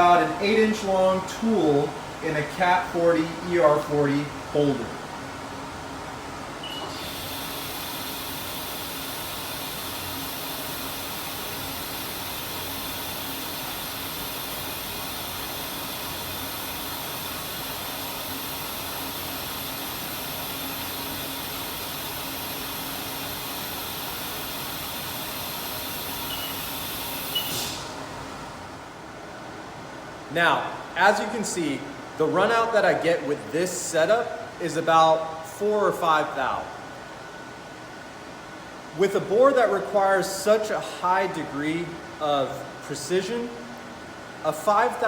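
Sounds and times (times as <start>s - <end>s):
mill spindle running: 6.6s - 28.7s.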